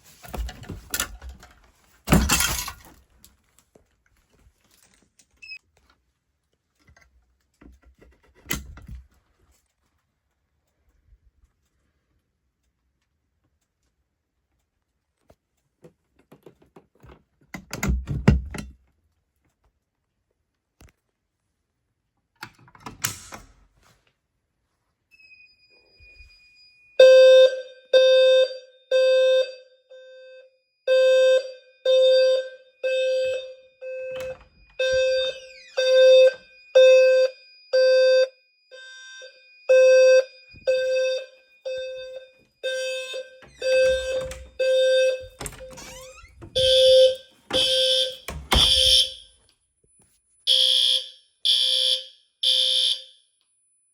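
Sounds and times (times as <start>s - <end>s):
fire alarm horn pulsing: 25.2s - 49.4s, 50.5s - 53.3s.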